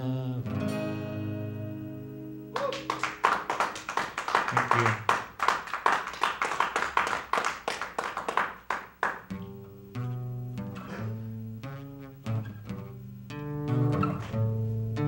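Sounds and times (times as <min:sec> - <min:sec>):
people clapping: 0:02.5 - 0:09.5.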